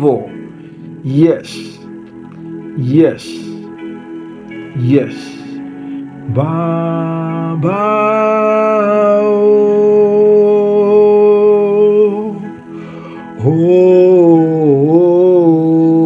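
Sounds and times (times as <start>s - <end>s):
man singing worship song: 0.0s - 0.4s, 4.7s - 5.6s, 6.2s - 16.0s
backing music: 0.0s - 16.0s.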